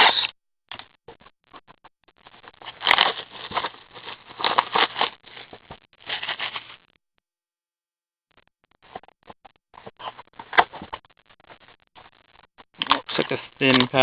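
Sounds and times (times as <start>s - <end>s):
wrapper crinkling and tearing: 2.6s - 6.8s.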